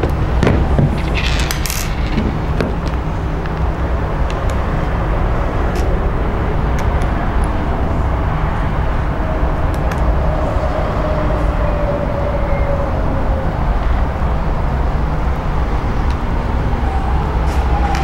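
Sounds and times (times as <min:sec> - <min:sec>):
steady low rumble: 0:00.0 - 0:11.6.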